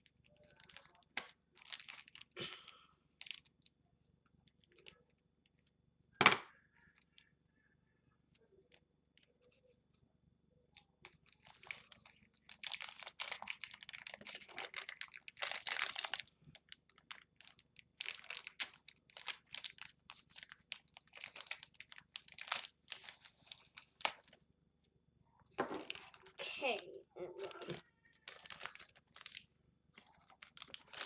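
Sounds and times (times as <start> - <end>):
plastic packaging crinkling: 0.0 - 2.4, 3.2 - 3.7, 11.0 - 24.4, 25.5 - 26.5, 27.4 - 31.0.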